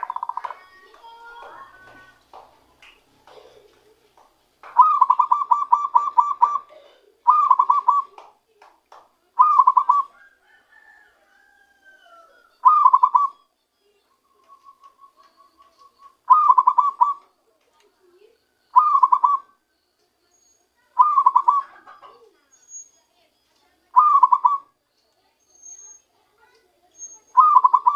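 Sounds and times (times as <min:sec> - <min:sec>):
dove cooing: 0:00.0 - 0:00.6, 0:04.7 - 0:08.2, 0:09.4 - 0:11.0, 0:11.8 - 0:13.4, 0:14.3 - 0:17.4, 0:18.7 - 0:19.6, 0:21.0 - 0:22.4, 0:24.0 - 0:24.8, 0:27.4 - 0:27.9.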